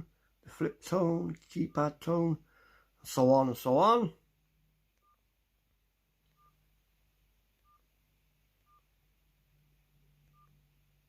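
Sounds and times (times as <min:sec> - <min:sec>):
faint keypad beeps: 0:05.0 - 0:05.2, 0:06.3 - 0:06.6, 0:07.6 - 0:07.9, 0:08.6 - 0:08.9, 0:10.2 - 0:10.7.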